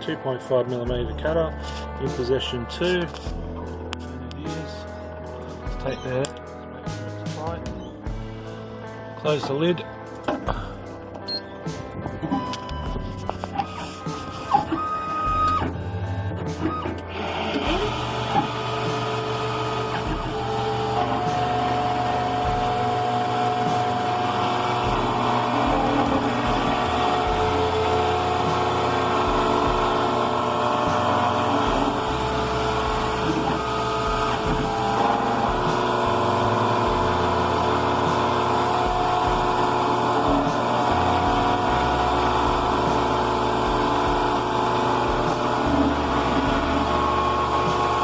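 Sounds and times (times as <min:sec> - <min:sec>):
key-cutting machine milling: 0:17.1 - 0:48.0.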